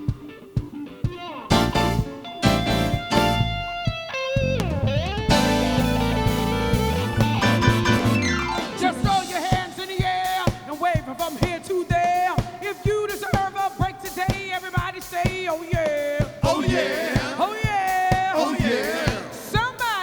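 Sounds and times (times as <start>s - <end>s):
soul band playing: 0.0s - 11.8s
drums beating: 0.0s - 20.0s.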